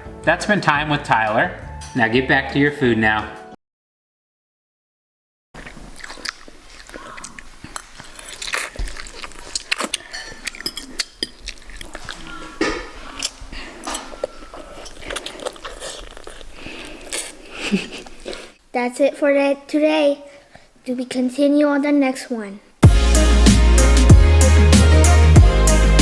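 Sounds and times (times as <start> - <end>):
person biting and chewing: 5.6 - 18.6.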